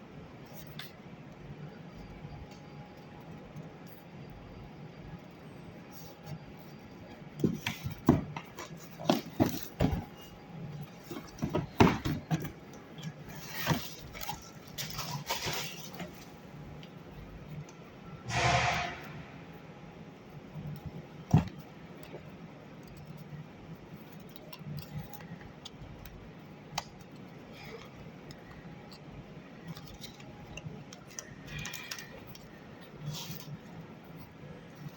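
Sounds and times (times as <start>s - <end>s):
packaging rustling: 7.4s - 16.4s.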